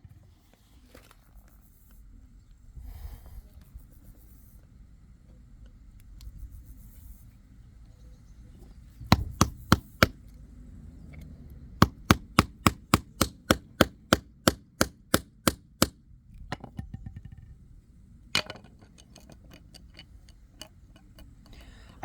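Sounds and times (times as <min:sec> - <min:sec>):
hammer striking plastic handle: 0:09.1 - 0:10.2, 0:11.8 - 0:16.0.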